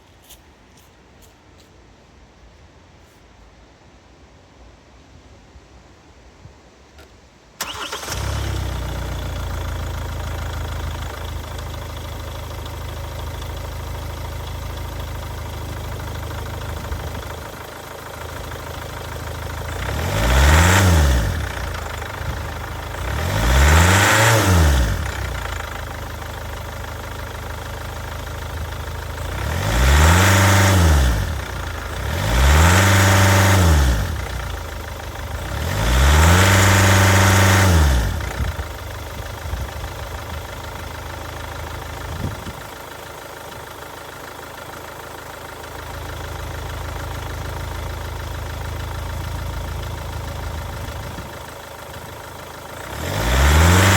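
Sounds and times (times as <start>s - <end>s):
engine revving: 7.6s - 11.3s, 19.5s - 26.3s, 29.2s - 39.8s, 52.7s - 53.9s
diesel engine starting and idling: 7.6s - 53.9s.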